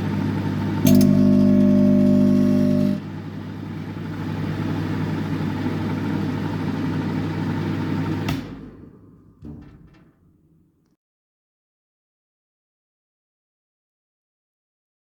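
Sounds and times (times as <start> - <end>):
microwave oven buzzing: 0.0 - 9.2
microwave oven humming: 0.0 - 10.7
microwave switch click: 0.8 - 3.0.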